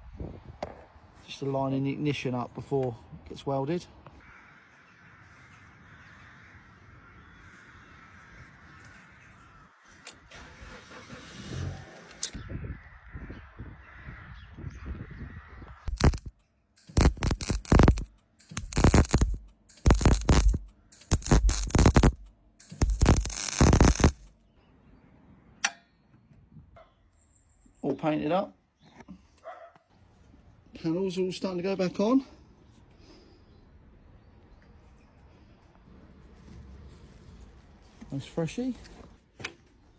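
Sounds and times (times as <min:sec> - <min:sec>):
crackling welding bursts: 0:15.9 - 0:24.3.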